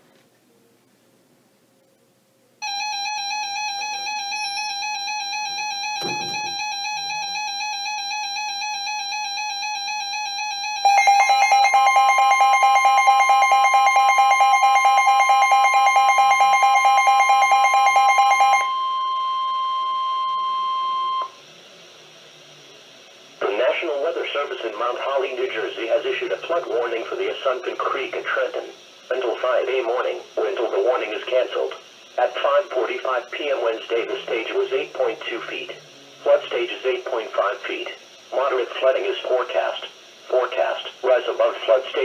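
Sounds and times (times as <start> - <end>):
steady warning tone: 2.6 - 21.4
warbling electronic alarm tone: 2.6 - 21.4.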